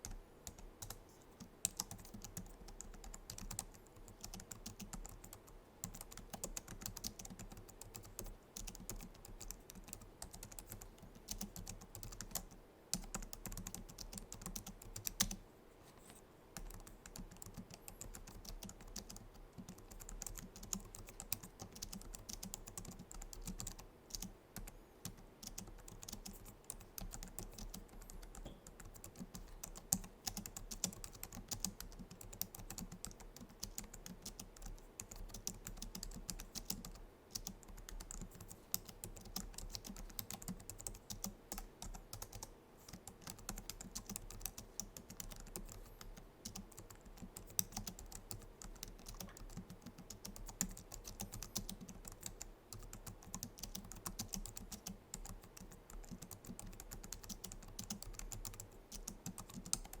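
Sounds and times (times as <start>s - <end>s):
fast typing on keyboard: 0.0s - 15.4s, 16.6s - 60.0s.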